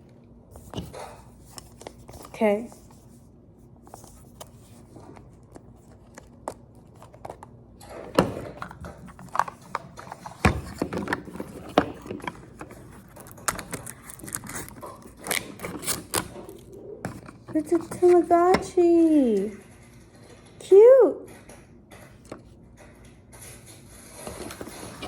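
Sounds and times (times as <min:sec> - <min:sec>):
plastic packaging crinkling: 0:08.6 - 0:18.4.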